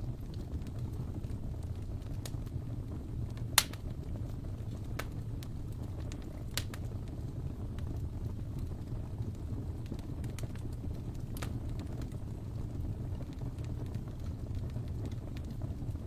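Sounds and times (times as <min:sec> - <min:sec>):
wood fire crackling and popping: 0:00.0 - 0:16.0.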